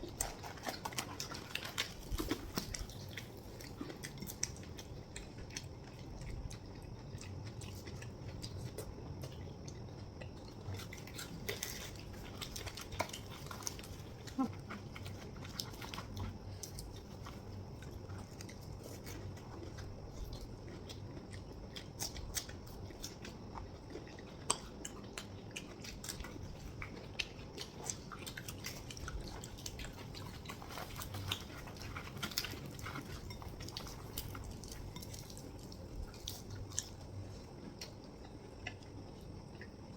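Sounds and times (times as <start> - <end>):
people chewing: 0.0 - 39.9.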